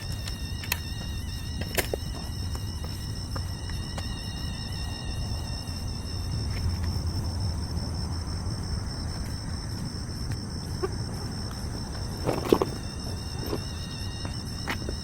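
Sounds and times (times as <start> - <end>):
crickets and insects trilling: 0.0 - 15.0.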